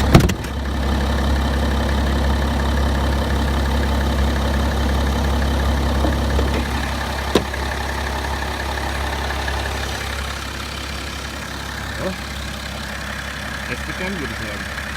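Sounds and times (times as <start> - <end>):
diesel engine idling: 0.0 - 14.9.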